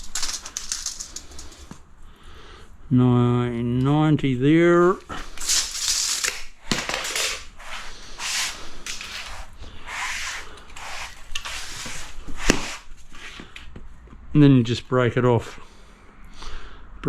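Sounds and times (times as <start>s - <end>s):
knife scoring cement sheet: 7.0s - 13.4s.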